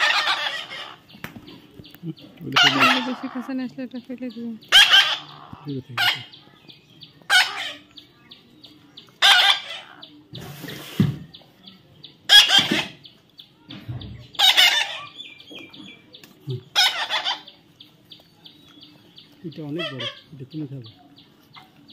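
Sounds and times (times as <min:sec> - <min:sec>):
baby parrot harsh calls: 0:00.0 - 0:01.0, 0:02.6 - 0:03.5, 0:04.7 - 0:06.4, 0:07.3 - 0:07.8, 0:09.2 - 0:10.1, 0:12.3 - 0:13.0, 0:14.4 - 0:15.2, 0:16.7 - 0:17.5.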